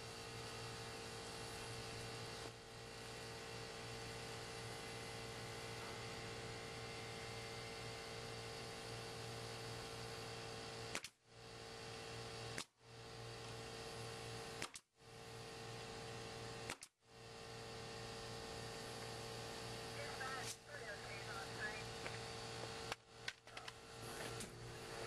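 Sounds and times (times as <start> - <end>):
electrical hum and hiss: 0.0 - 25.0
constant mid-pitched tone: 18.3 - 22.8.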